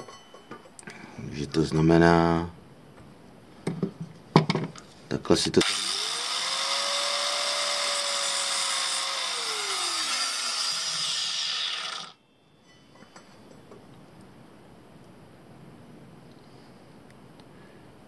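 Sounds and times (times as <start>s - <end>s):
electric power tool cutting: 5.6s - 12.2s.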